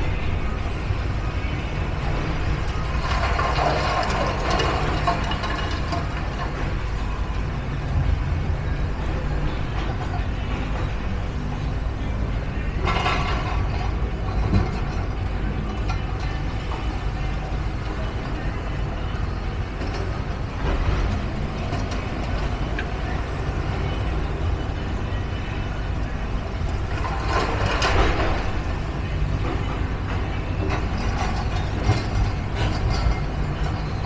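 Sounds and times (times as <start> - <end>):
heavy vehicle engines rumbling: 0.0 - 34.0.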